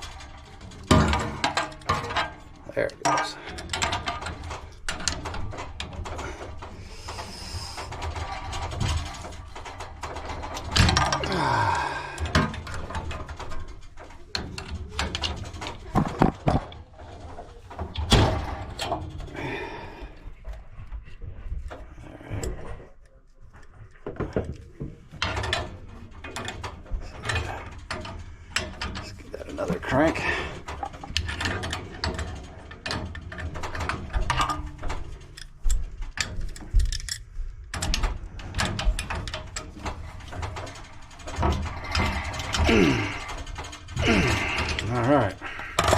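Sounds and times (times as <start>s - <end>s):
wrench clicking and clanking on metal: 0.0s - 16.8s, 24.2s - 45.9s.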